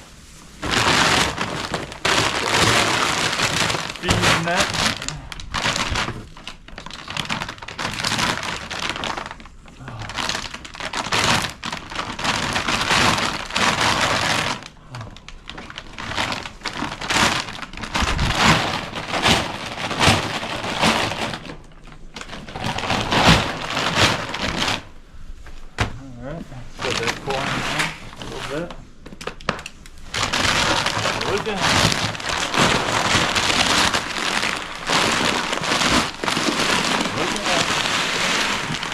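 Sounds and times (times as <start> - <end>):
grain pouring into a trough: 30.3 - 38.9.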